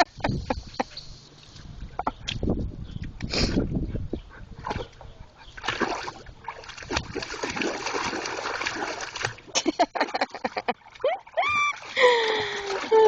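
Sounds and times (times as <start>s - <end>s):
dog splashing in water barrel: 5.6s - 13.0s.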